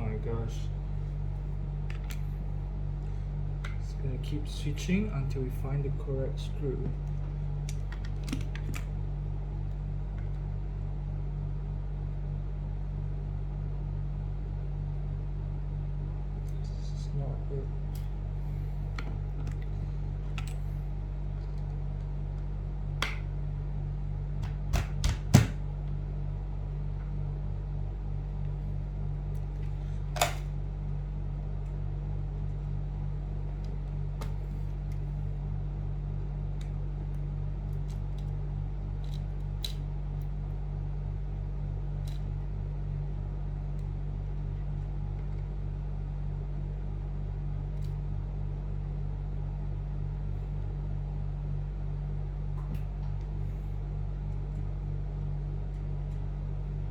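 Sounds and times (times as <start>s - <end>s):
steady low hum: 0.0s - 56.9s.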